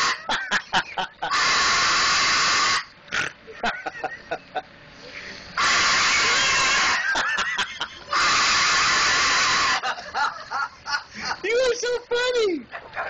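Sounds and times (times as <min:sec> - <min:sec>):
cockatoo screeching: 0:00.0 - 0:00.4, 0:01.2 - 0:02.9, 0:05.6 - 0:07.2, 0:08.1 - 0:10.0.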